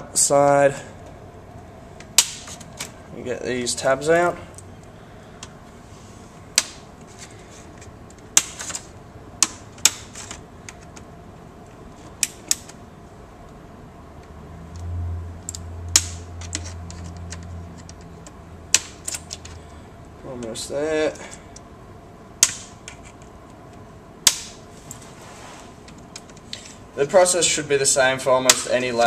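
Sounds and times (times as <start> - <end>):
low hum: 10.4 - 20.4.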